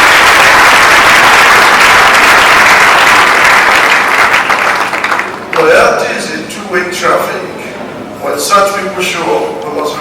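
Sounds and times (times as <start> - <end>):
crowd applauding loudly: 0.0 - 5.7.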